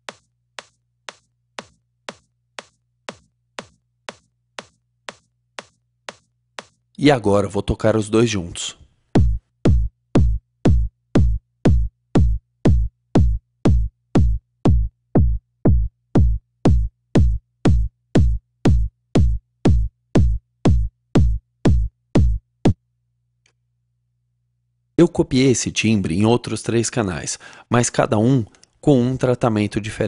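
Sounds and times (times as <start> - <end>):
electronic kick drum loop: 9.2 - 22.8.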